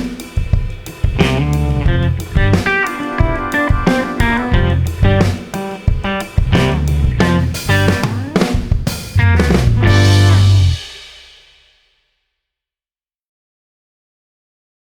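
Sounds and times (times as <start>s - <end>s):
rock band music: 0.0s - 11.0s.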